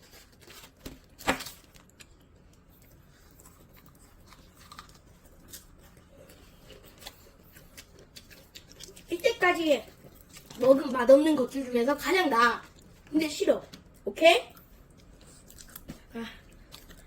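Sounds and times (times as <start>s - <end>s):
crunches of chewing: 1.8s - 11.0s, 12.6s - 17.0s.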